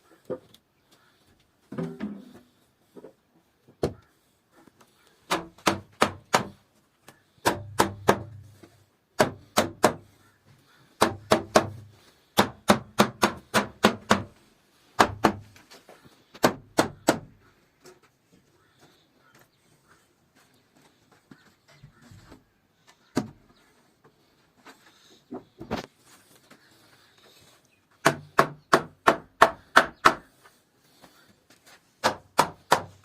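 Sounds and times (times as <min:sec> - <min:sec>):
hammer blows on wood: 0:07.4 - 0:08.6.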